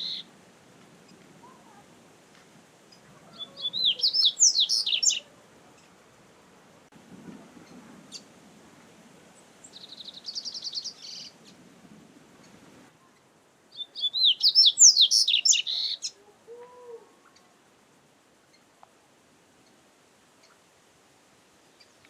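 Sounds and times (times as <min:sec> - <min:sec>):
bird singing trills and whistles: 0:00.0 - 0:00.3, 0:03.4 - 0:05.3, 0:09.7 - 0:11.3, 0:13.7 - 0:16.1.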